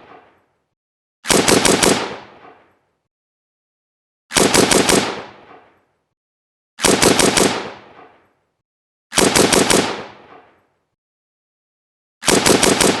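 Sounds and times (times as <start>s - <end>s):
rifle firing automatic bursts: 1.3s - 2.5s, 4.3s - 5.6s, 6.8s - 8.0s, 9.2s - 10.3s, 12.2s - 13.0s.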